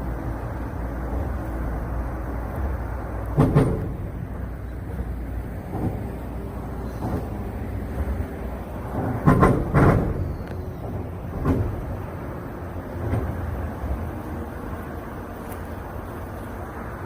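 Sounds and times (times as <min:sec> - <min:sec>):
traffic rumble: 0:00.0 - 0:17.0
wheels banging over expansion joint: 0:03.3 - 0:12.2.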